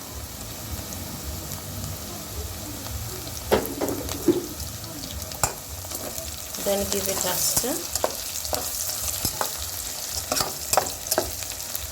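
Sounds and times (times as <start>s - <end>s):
onions frying in oil: 0.0s - 11.9s
knocks against a pot: 3.5s - 4.6s.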